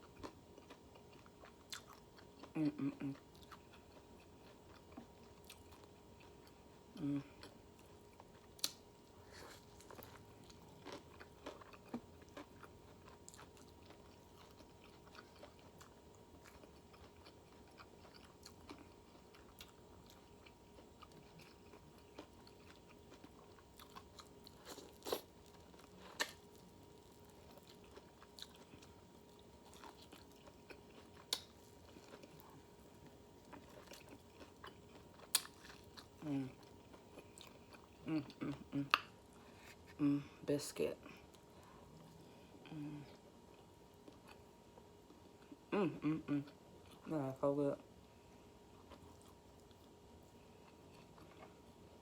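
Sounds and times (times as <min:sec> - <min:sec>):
quiet chewing and mouth noises: 0:00.0 - 0:40.4, 0:41.0 - 0:47.1, 0:47.7 - 0:52.0.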